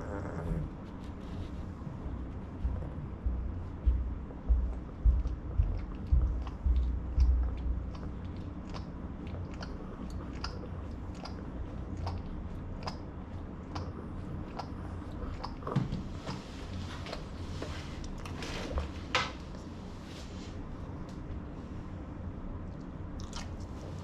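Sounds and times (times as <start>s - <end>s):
low thumps: 2.2s - 8.0s
dog making clicking mouth noises: 4.8s - 15.9s.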